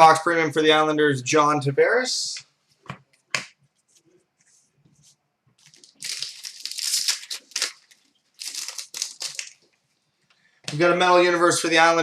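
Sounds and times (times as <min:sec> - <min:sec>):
packaging crinkling: 0:05.6 - 0:09.8.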